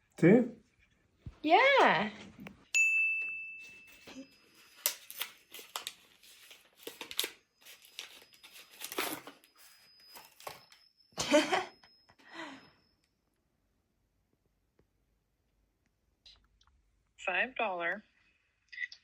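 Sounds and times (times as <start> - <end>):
paper crinkling and tearing: 4.7 - 10.6.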